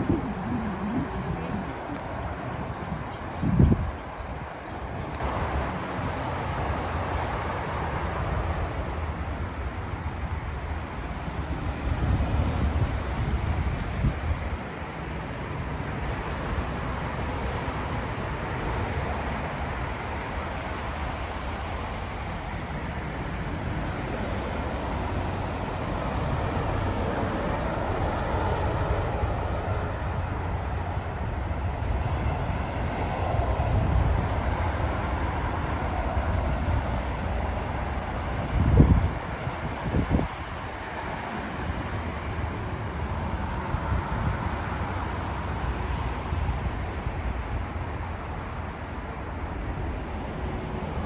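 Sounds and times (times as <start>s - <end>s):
wind buffeting microphone: 0.0s - 5.7s, 9.3s - 46.9s
steady low rumble: 0.0s - 7.0s, 17.6s - 46.3s.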